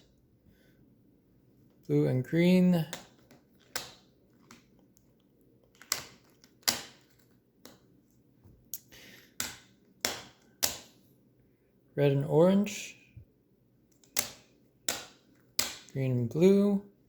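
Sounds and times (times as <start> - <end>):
plastic cube clacks: 2.9 - 7.9.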